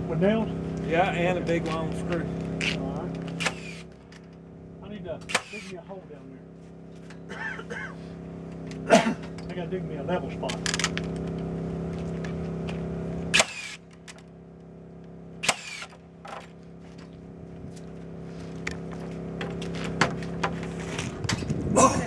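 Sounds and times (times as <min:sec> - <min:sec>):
machine hum: 0:00.0 - 0:22.0
loud snap: 0:05.3 - 0:05.7, 0:13.4 - 0:13.8
sharp knocks: 0:05.3 - 0:05.7.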